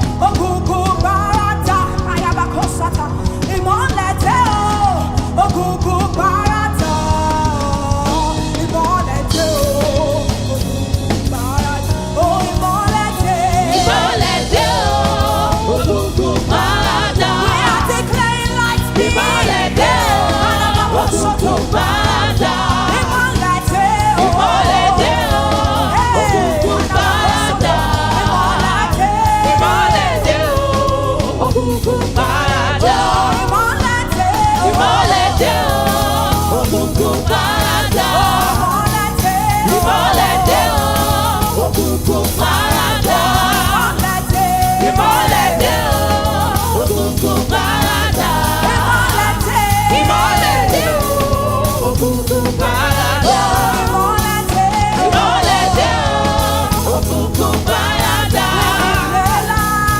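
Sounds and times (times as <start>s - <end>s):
band with bass and drums: 0.0s - 59.9s
lead singer: 0.0s - 59.9s
backing voices: 13.7s - 59.9s.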